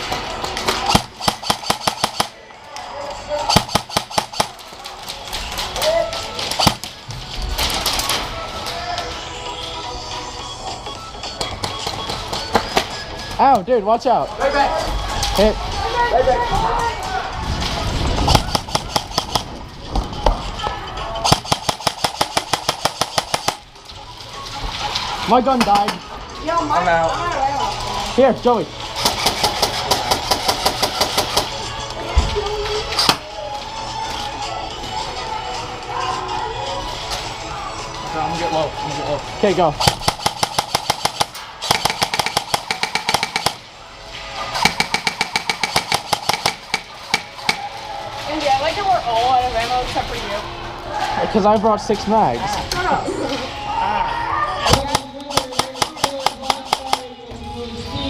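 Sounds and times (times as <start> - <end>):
airsoft guns firing: 0.7 - 2.4, 3.5 - 4.8, 6.4 - 7.0, 18.2 - 19.6, 21.2 - 23.7, 29.0 - 31.6, 39.8 - 43.7, 44.6 - 47.7, 54.6 - 57.0.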